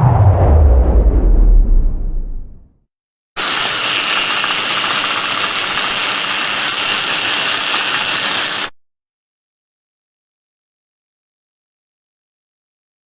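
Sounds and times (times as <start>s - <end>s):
hissing mechanical whir: 3.4s - 8.7s.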